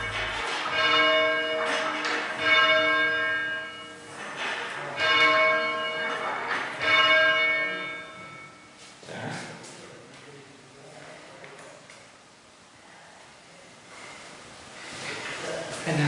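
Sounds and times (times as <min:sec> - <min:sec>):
church bells ringing: 0:00.0 - 0:04.0, 0:05.0 - 0:08.2.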